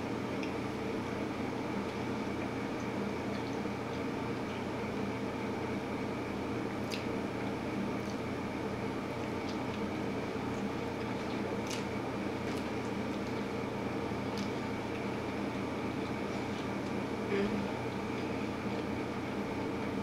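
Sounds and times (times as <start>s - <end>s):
mechanical room hum: 0.0s - 20.0s
wet chewing clicks: 6.8s - 7.1s.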